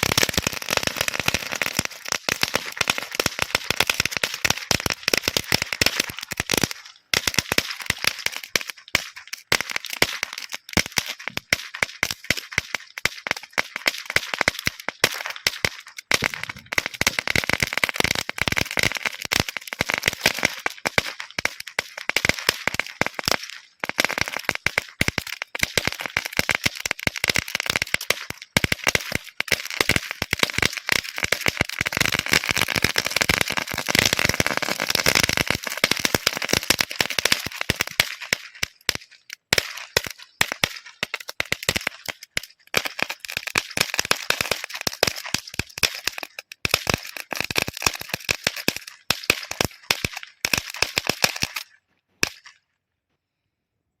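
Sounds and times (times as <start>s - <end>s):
firecracker string crackling: 0.0s - 52.6s.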